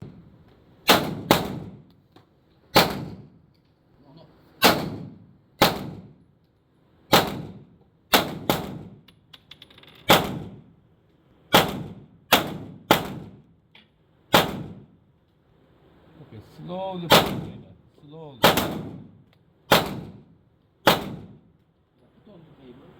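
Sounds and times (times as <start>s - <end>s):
gunshots with echo: 17.1s - 17.5s, 18.4s - 19.1s, 19.7s - 20.2s, 20.9s - 21.4s.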